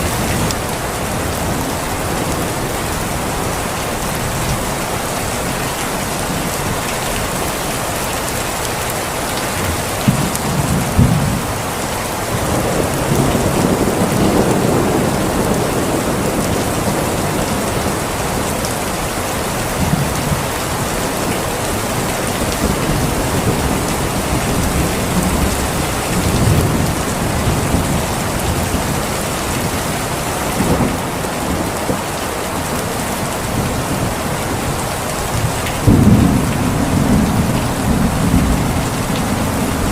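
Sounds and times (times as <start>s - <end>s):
heavy rain falling: 0.0s - 39.9s
thunder rolling: 12.3s - 19.0s, 19.7s - 32.0s, 33.6s - 39.9s.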